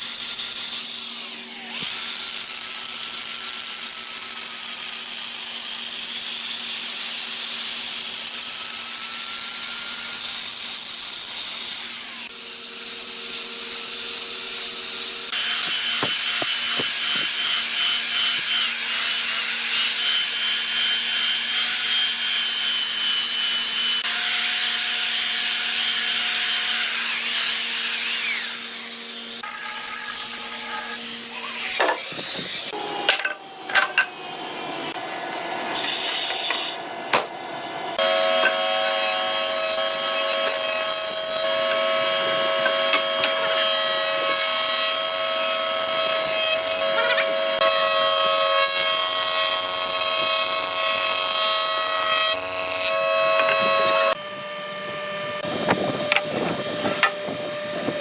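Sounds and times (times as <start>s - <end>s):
power tool abrading wood: 14.9s - 23.0s, 26.6s - 54.2s.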